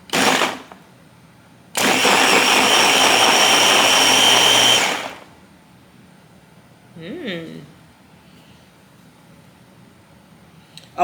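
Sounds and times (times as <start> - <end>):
blender motor running: 0.0 - 0.7, 1.8 - 5.3.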